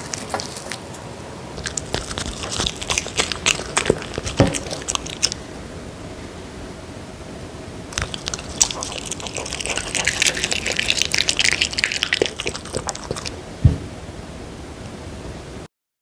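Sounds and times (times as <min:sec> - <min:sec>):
dog licking and eating: 0:00.0 - 0:05.4, 0:07.9 - 0:13.5
low thump: 0:13.6 - 0:14.0.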